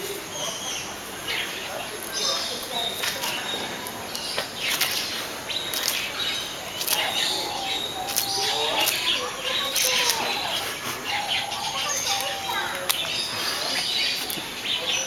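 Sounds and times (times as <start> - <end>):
birds chirping and calling: 0.0 - 15.0.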